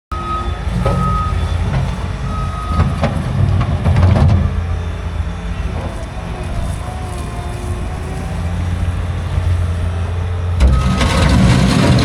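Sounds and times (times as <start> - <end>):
backup alarm beeping: 0.1 - 3.0, 10.6 - 11.4
heavy vehicle engine rumbling: 0.1 - 12.0.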